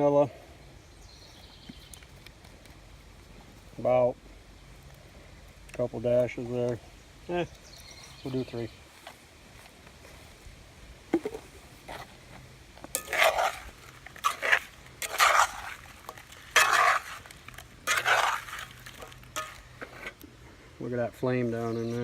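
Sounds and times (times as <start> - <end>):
utensil scraping apples in a pan: 12.9 - 20.2.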